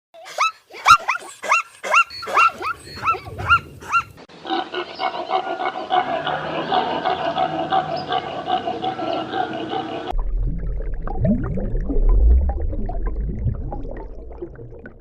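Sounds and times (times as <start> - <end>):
animal calling: 0.2 - 10.1.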